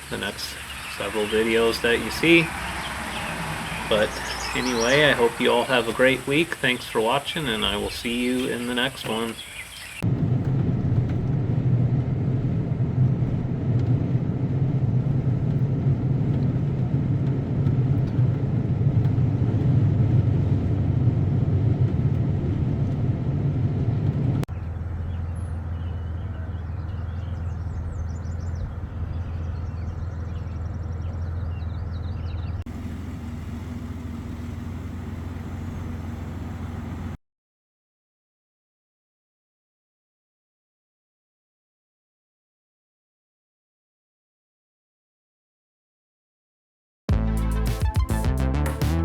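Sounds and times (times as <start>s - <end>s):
birds chirping: 0.0s - 10.0s, 24.5s - 37.2s
loud low rumble: 10.0s - 37.2s.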